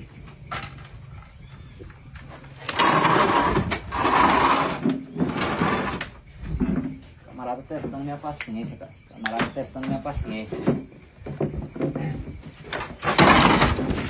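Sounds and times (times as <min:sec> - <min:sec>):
small engine revving: 0:02.5 - 0:06.3, 0:12.8 - 0:14.0.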